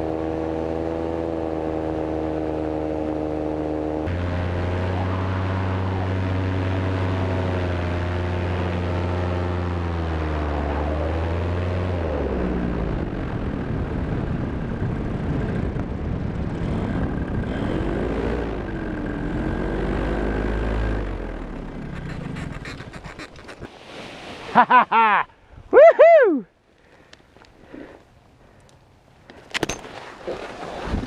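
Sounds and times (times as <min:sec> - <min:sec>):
paramotor engine and propeller: 0:00.0 - 0:23.8
rushing noise: 0:04.1 - 0:09.7.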